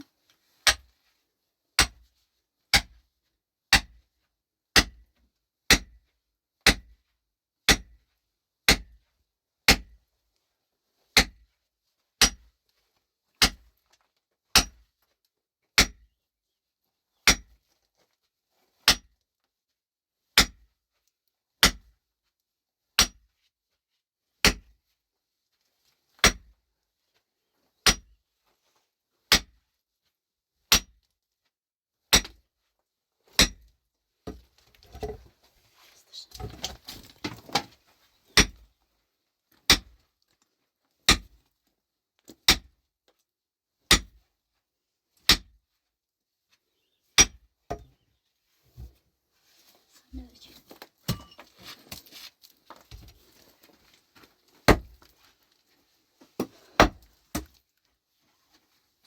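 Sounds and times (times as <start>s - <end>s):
hand tool striking hard material: 0.6s - 0.9s, 1.8s - 2.0s, 2.7s - 3.0s, 3.7s - 4.0s, 4.7s - 5.1s, 5.7s - 6.0s, 6.7s - 7.0s, 7.7s - 8.0s, 8.7s - 9.0s, 9.7s - 10.0s, 11.2s - 11.4s, 12.2s - 12.5s, 13.4s - 13.7s, 14.5s - 14.8s, 15.8s - 16.1s, 17.2s - 17.6s, 18.8s - 19.1s, 20.4s - 20.7s, 21.6s - 21.9s, 23.0s - 23.3s, 24.4s - 24.7s, 27.8s - 28.2s, 29.3s - 29.6s, 30.7s - 31.0s, 32.1s - 32.4s, 33.3s - 33.7s, 36.4s - 38.6s, 39.7s - 40.0s, 41.1s - 41.4s, 42.3s - 42.7s, 43.9s - 44.2s, 45.2s - 45.6s, 47.2s - 48.0s, 51.0s - 52.3s, 54.6s - 55.1s, 56.4s - 57.6s.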